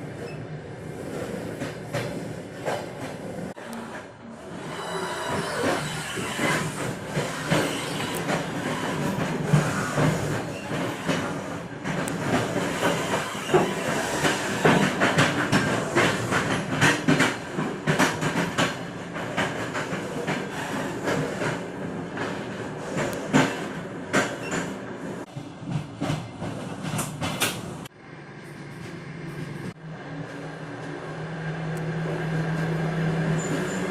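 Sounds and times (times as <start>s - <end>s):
train wheels clattering over rail joints: 5.3s - 27.8s.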